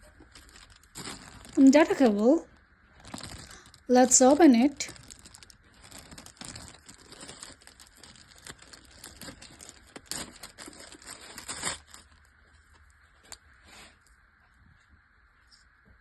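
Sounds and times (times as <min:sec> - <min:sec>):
plastic packaging crinkling: 0:00.0 - 0:13.4.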